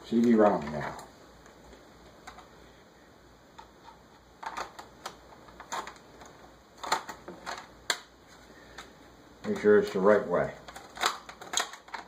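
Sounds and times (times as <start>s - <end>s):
plastic clicks and knocks: 10.6s - 12.0s.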